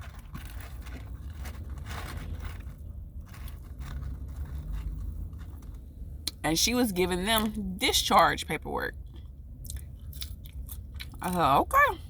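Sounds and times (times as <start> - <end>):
clicks and rustles: 0.0 - 5.9
biting and chewing: 0.0 - 6.4, 9.0 - 11.4
low rumble: 0.0 - 12.0.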